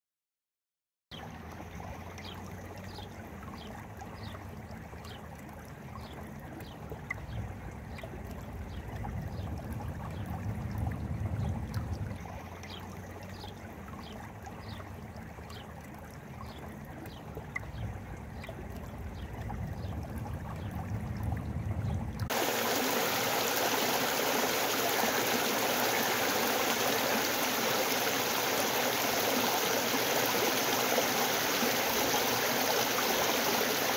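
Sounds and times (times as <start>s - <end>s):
river water rushing: 22.3s - 33.9s.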